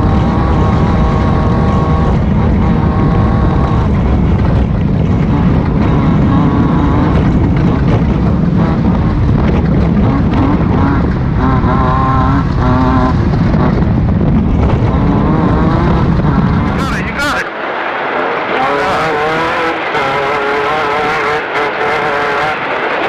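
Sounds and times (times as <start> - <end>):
race car engine running hard: 0.0 - 23.0.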